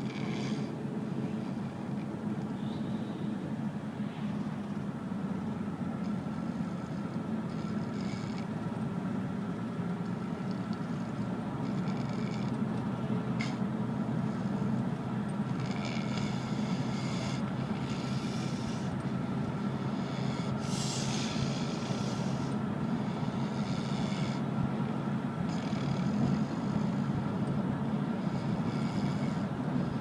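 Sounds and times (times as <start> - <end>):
steady low drone: 0.0 - 30.0.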